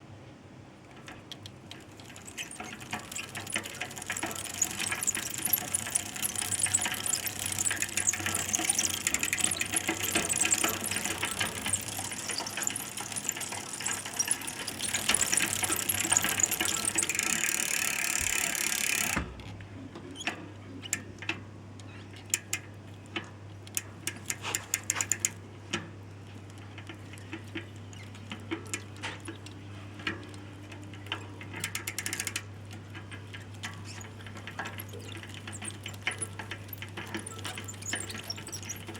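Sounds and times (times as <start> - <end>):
bike chain clicking squeak: 1.7 - 19.2, 24.1 - 25.4, 27.8 - 29.5, 31.1 - 32.4, 33.4 - 38.9.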